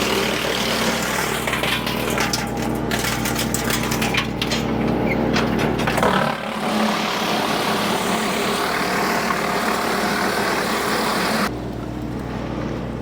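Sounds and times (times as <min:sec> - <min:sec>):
tractor engine drone: 0:00.0 - 0:13.0
wood chipper chipping branches: 0:00.0 - 0:13.0.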